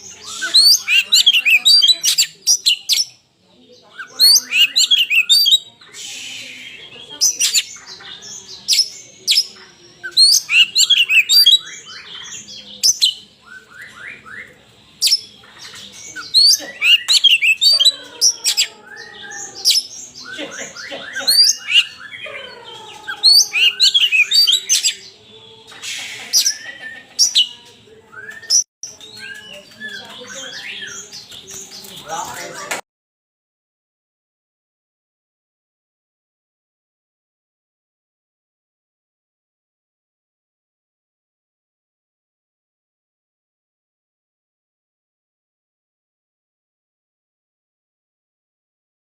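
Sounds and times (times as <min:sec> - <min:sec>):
magpie-robin singing: 0:00.0 - 0:32.6.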